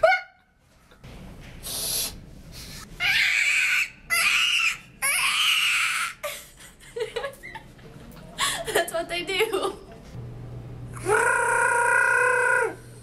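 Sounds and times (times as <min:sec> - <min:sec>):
person making hissing blows: 0:01.6 - 0:02.9.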